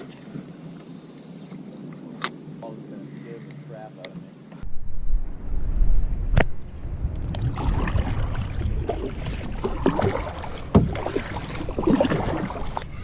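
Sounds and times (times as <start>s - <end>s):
water noise: 0.0s - 13.0s
wind rumbling on microphone: 4.6s - 13.0s.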